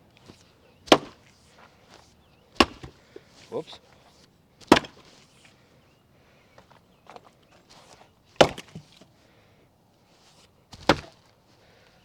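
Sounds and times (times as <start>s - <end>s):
axe chopping firewood: 0.2s - 3.3s, 4.6s - 5.2s, 8.4s - 9.0s, 10.8s - 11.3s.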